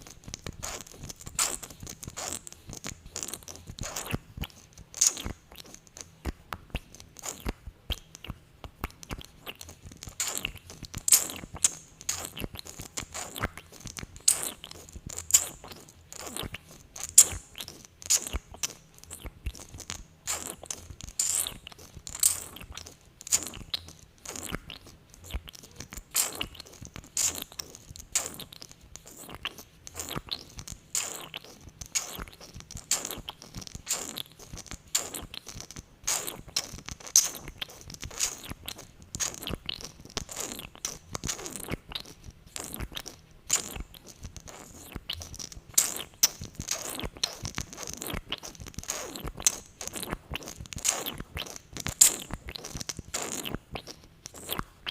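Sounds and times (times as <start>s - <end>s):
sticky lip clicks and pops: 0.0s - 54.9s.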